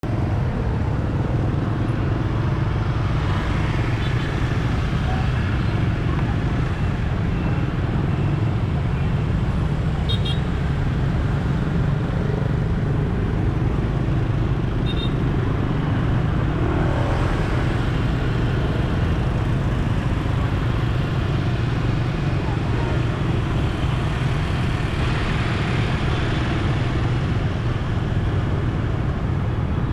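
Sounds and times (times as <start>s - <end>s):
motor vehicle rumble: 0.0s - 29.9s
road noise: 0.0s - 29.9s.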